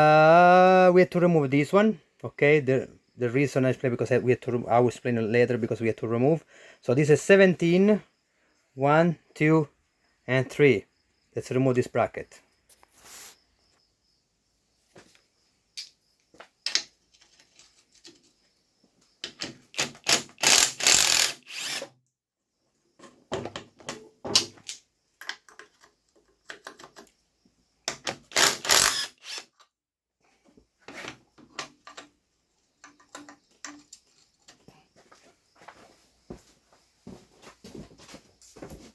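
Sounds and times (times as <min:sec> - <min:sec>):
ratchet wrench clicking: 0:19.8 - 0:21.8, 0:28.3 - 0:29.4.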